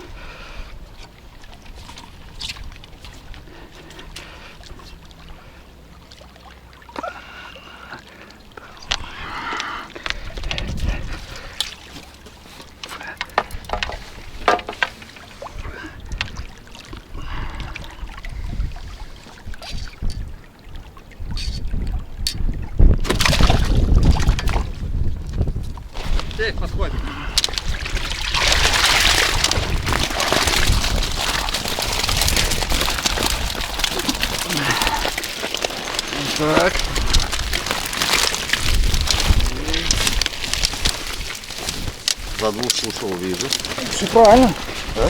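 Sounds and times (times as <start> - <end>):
water pouring and splashing: 8.0 - 45.0
wind rumbling on microphone: 8.8 - 11.6, 15.3 - 45.0.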